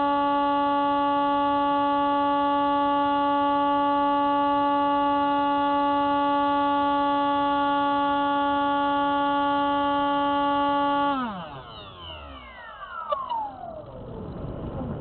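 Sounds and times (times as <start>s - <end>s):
model plane motor whining: 0.0s - 14.1s.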